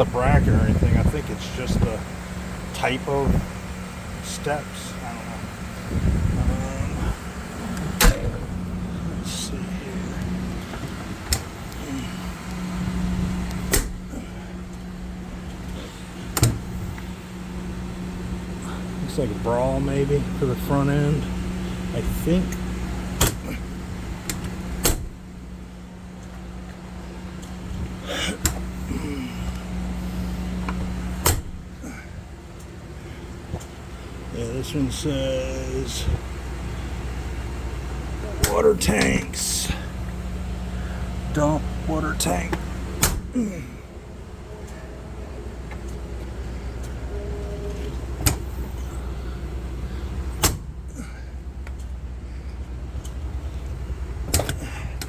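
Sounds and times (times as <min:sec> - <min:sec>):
low engine hum: 0:00.0 - 0:55.0
steady low rumble: 0:00.0 - 0:55.0
sharp latch clicks: 0:07.8 - 0:08.5, 0:11.2 - 0:11.6, 0:13.5 - 0:14.1, 0:16.3 - 0:16.6, 0:23.2 - 0:23.5, 0:24.2 - 0:25.2, 0:30.7 - 0:31.6, 0:42.5 - 0:43.3, 0:48.2 - 0:48.5, 0:50.4 - 0:50.7, 0:54.3 - 0:54.6
compartment door clacking shut: 0:07.8 - 0:08.6, 0:13.7 - 0:14.1, 0:23.2 - 0:23.5, 0:24.3 - 0:25.2, 0:42.5 - 0:43.3, 0:50.4 - 0:50.7.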